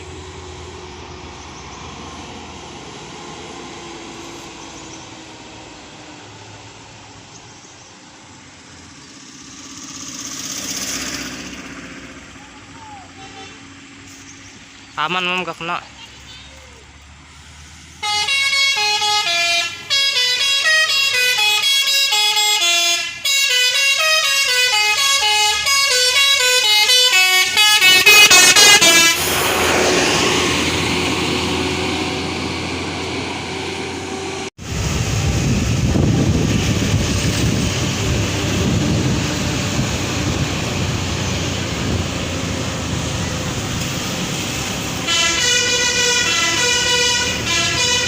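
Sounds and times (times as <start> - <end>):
engine and road noise: 0.0 - 48.0
musical bus horn tune: 18.0 - 34.5, 44.7 - 48.0
steady horn tone: 18.0 - 34.5, 44.8 - 48.0.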